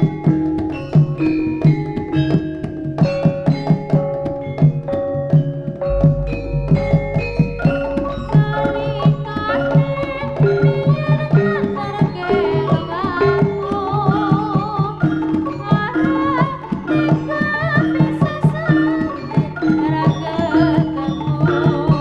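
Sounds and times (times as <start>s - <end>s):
ringing metallophone notes: 0.0s - 22.0s
wavering held melody line: 0.0s - 22.0s
hand drums playing quick strokes: 1.0s - 11.2s.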